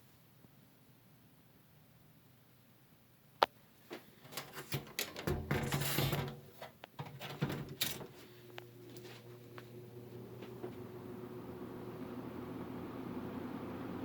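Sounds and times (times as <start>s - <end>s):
fan motor humming: 4.2s - 14.0s.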